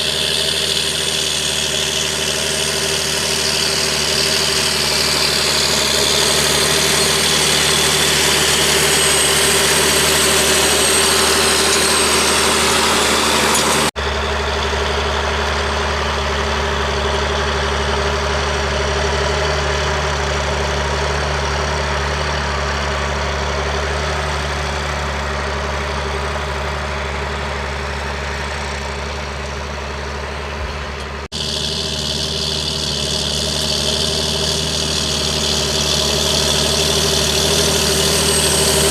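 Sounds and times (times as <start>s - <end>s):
tractor diesel engine running: 0.0s - 38.9s.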